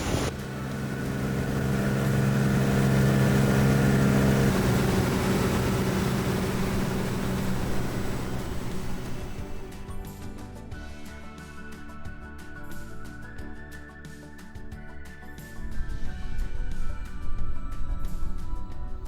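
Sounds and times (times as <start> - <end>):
engine running: 0.0 - 10.7.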